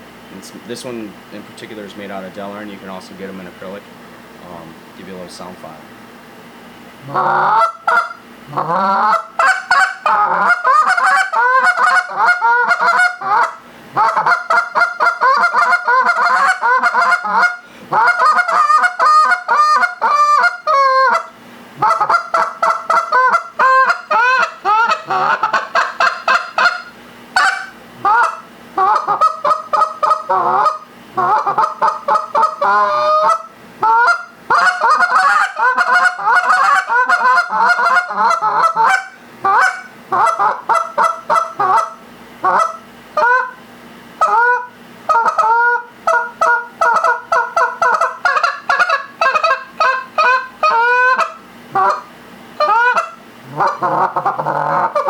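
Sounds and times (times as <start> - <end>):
goose call honks and clucks: 7.0 - 43.6, 44.2 - 55.0.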